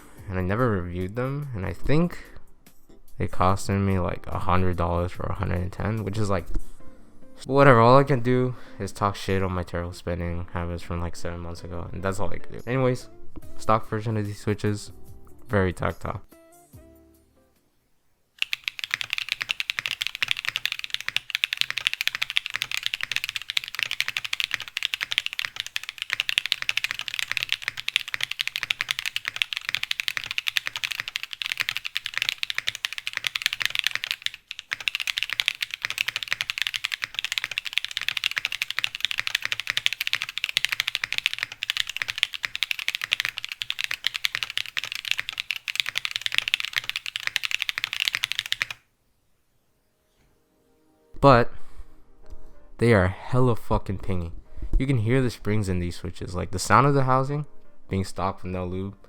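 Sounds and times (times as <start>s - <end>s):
mechanical keyboard typing: 18.4s - 48.8s.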